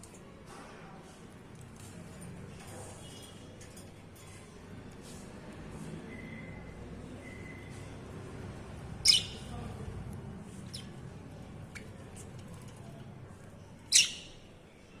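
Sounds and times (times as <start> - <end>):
budgerigars chirping: 9.0 - 9.5.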